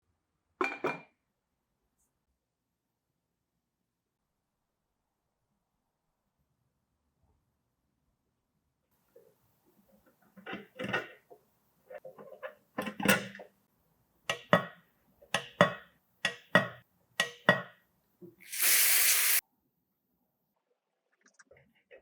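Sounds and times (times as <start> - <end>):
burst of hiss: 18.4 - 19.4.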